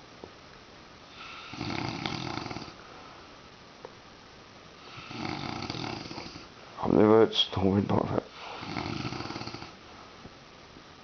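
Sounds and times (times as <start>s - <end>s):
man snoring heavily: 1.1s - 2.8s, 4.9s - 6.5s, 8.4s - 9.8s.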